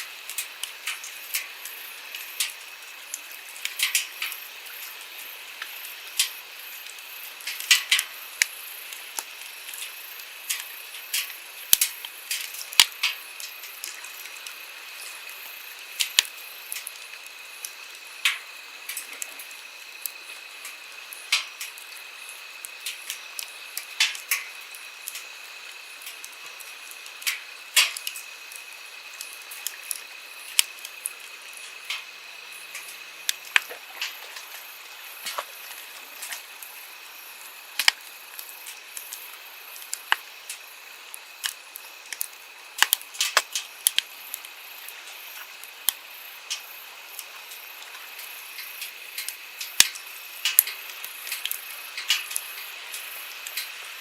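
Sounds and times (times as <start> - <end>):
campfire crackling and popping: 0.0 - 53.9
stream flowing: 28.8 - 43.2.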